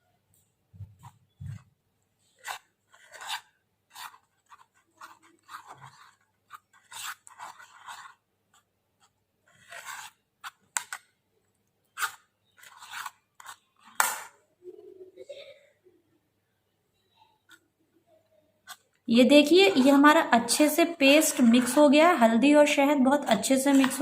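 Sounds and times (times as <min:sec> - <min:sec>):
spoon scraping paste in bowl: 0:02.3 - 0:11.0, 0:11.9 - 0:14.0, 0:18.6 - 0:24.0.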